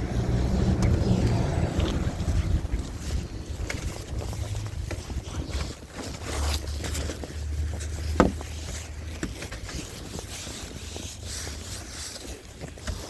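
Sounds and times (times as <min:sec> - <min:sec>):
wind rumbling on microphone: 0:00.0 - 0:06.5
snow scraped off windshield: 0:00.0 - 0:13.0.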